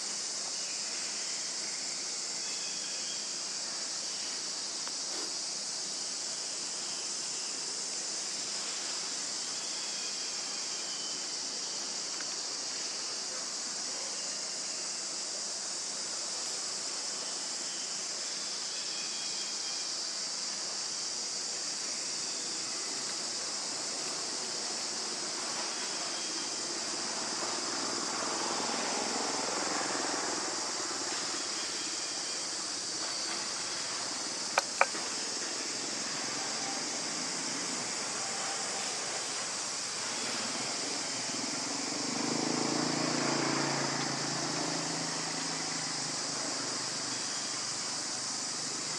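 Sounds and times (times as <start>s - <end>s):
high-pitched insect drone: 16.7s - 48.9s.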